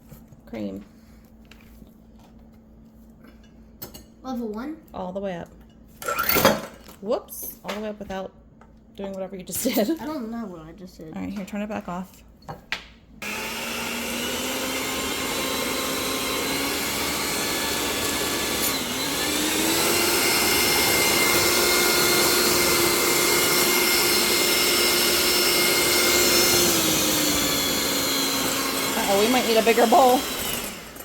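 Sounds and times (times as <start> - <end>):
electric hand mixer whining: 13.2 - 31.0.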